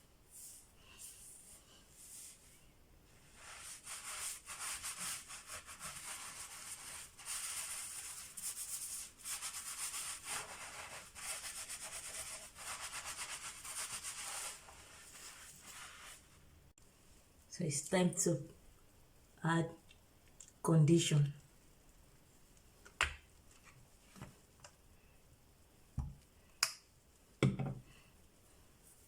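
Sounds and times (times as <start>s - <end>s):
hands scrubbing hair: 3.2s - 16.3s.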